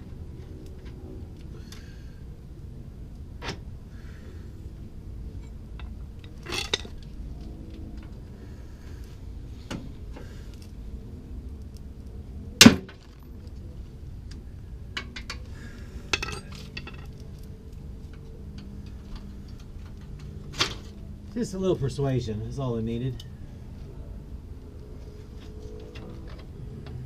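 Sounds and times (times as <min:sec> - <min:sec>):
hand tools clinking on metal: 0:16.1 - 0:17.2.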